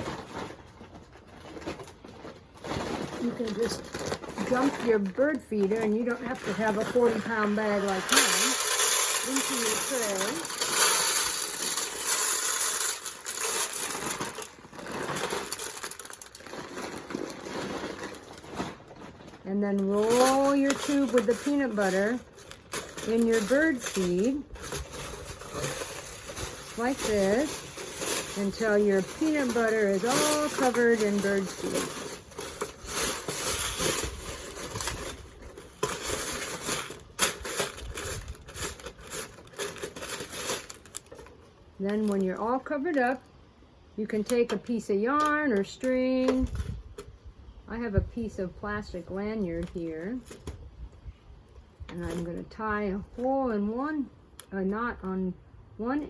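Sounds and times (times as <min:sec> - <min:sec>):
bag rustling: 0:00.0 - 0:41.2.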